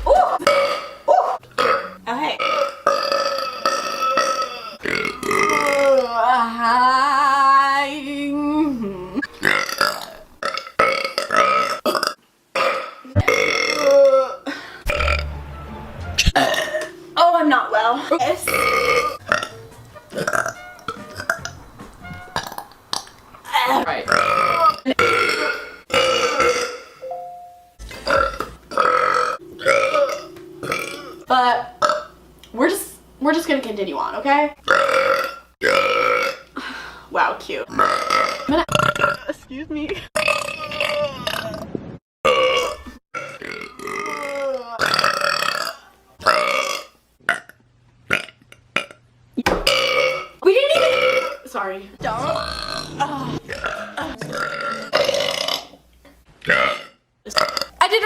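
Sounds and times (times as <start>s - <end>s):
woman burping: 0.0s - 6.2s, 9.2s - 15.2s, 16.3s - 17.0s, 17.9s - 19.5s, 20.1s - 20.6s, 23.5s - 27.1s, 27.9s - 31.2s, 34.7s - 36.6s, 37.7s - 39.4s, 40.1s - 41.6s, 42.3s - 55.8s, 56.5s - 57.8s.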